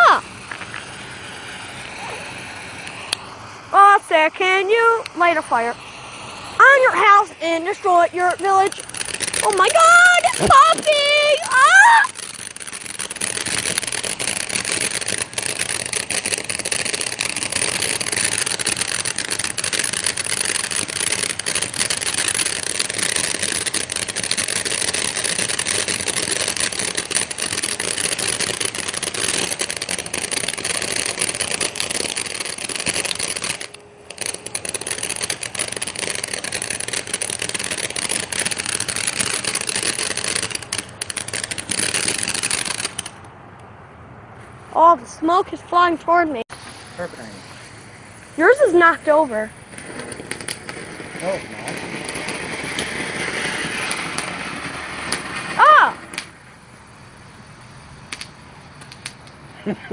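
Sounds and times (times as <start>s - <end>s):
firework crackling and popping: 0.0s - 59.9s.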